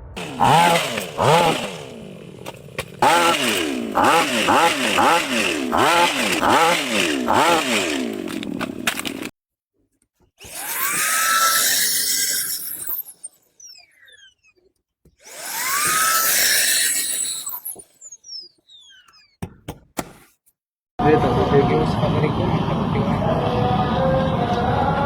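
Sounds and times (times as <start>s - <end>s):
motor starting with rising whine: 0.0s - 9.2s, 10.4s - 14.6s, 15.2s - 19.4s
small motor revving: 0.1s - 9.3s, 10.4s - 19.4s.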